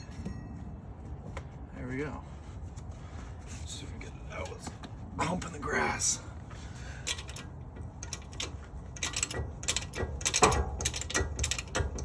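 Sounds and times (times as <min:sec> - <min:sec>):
jack ratcheting clicks: 0:07.0 - 0:12.0.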